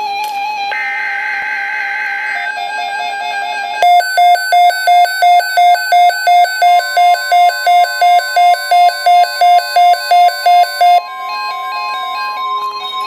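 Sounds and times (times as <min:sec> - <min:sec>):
steady high tone: 0:00.7 - 0:11.0
rapid electronic alert beeps: 0:03.8 - 0:11.0.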